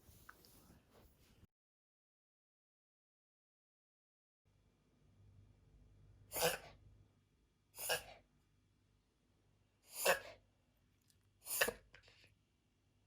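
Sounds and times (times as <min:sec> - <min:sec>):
puppy sneezing: 0:06.3 - 0:06.8, 0:07.8 - 0:08.2, 0:09.9 - 0:10.4, 0:11.4 - 0:11.9.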